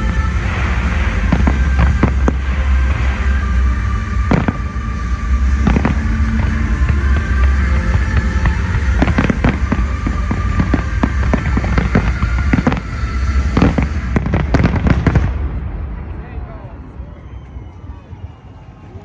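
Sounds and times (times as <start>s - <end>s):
fireworks cracks and bangs: 0.0s - 16.1s
deep continuous rumble: 0.0s - 19.0s.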